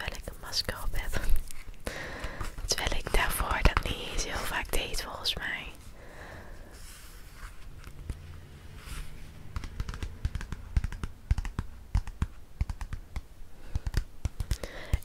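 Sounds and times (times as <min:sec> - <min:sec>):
book rustling: 0:01.2 - 0:04.5, 0:06.7 - 0:12.4
fingers tapping on book: 0:02.2 - 0:04.0, 0:09.4 - 0:15.0.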